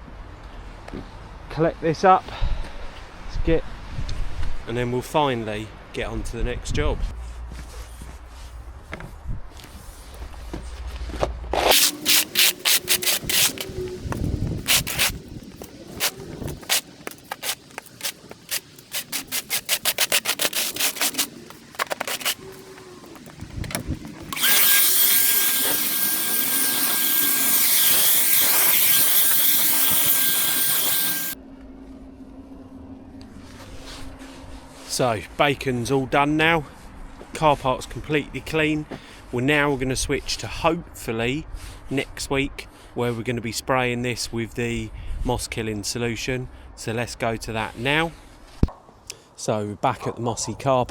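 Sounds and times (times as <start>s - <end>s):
scraping strokes across ground: 11.6s - 31.4s.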